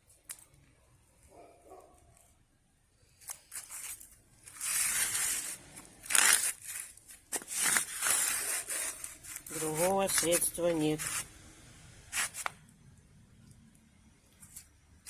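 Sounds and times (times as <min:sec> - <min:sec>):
hands rustling and scraping: 0:03.2 - 0:11.3, 0:12.1 - 0:12.6.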